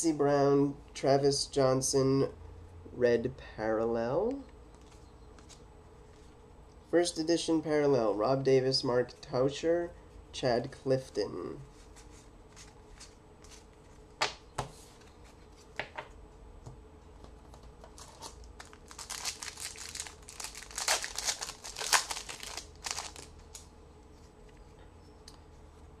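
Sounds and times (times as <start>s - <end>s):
foil wrapper crinkling and tearing: 17.9s - 23.7s.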